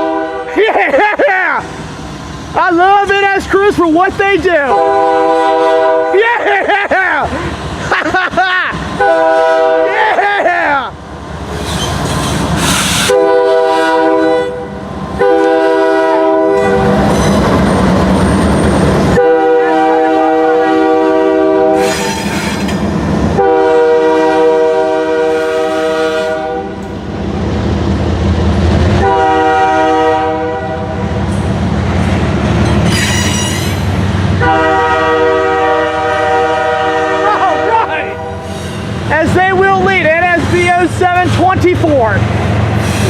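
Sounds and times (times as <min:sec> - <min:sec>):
locomotive air horn blasts: 0:00.0 - 0:00.6, 0:04.6 - 0:06.2, 0:09.0 - 0:09.9, 0:13.0 - 0:17.1, 0:19.2 - 0:22.5, 0:23.4 - 0:26.8, 0:29.0 - 0:31.0, 0:34.4 - 0:38.6
diesel locomotives running: 0:00.0 - 0:43.0
train wheels running: 0:01.0 - 0:14.0, 0:14.6 - 0:19.2, 0:21.7 - 0:23.5, 0:30.9 - 0:35.0, 0:37.3 - 0:43.0.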